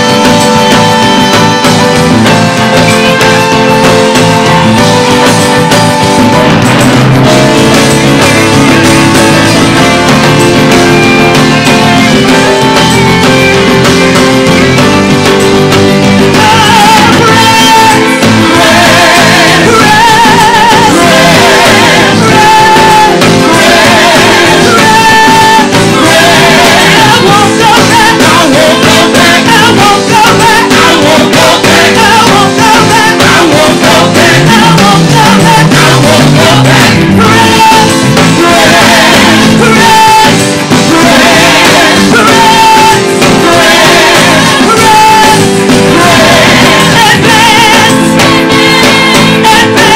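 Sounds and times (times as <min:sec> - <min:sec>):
band playing: 0:00.0 - 0:49.9
people singing: 0:07.8 - 0:49.9.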